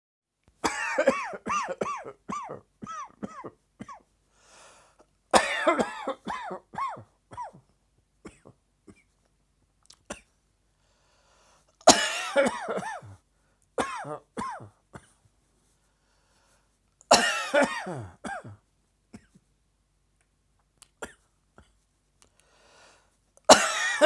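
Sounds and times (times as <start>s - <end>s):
person coughing: 0.6s - 4.0s, 5.4s - 7.6s, 11.9s - 13.2s, 13.8s - 15.2s, 17.1s - 19.4s, 23.5s - 24.0s.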